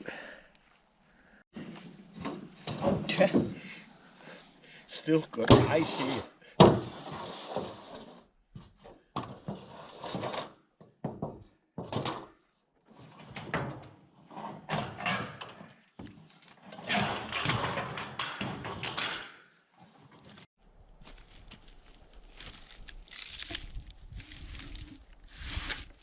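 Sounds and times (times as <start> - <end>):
scraping noises: 5.0 - 8.3, 19.8 - 26.0.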